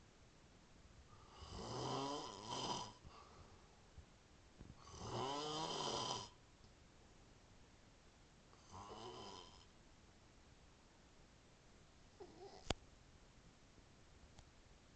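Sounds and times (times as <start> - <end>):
man snoring: 1.2 - 3.0, 4.8 - 6.4, 8.6 - 9.7.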